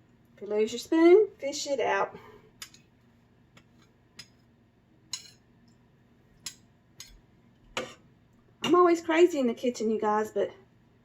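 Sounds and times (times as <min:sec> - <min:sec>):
spoon clinking on cooking pot: 0:05.1 - 0:05.4.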